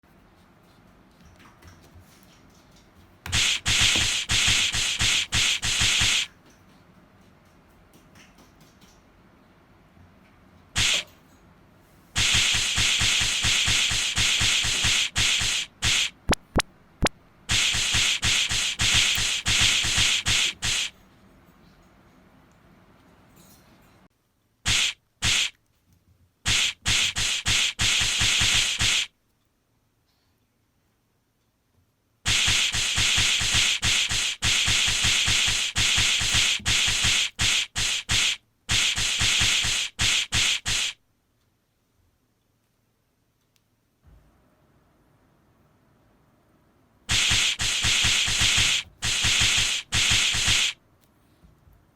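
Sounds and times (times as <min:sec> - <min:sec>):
cartoon punch sound effects: 0:03.3 - 0:06.3, 0:10.8 - 0:11.1, 0:12.2 - 0:16.6, 0:17.5 - 0:20.9, 0:24.7 - 0:25.5, 0:26.5 - 0:29.1, 0:32.3 - 0:41.0, 0:47.1 - 0:50.8.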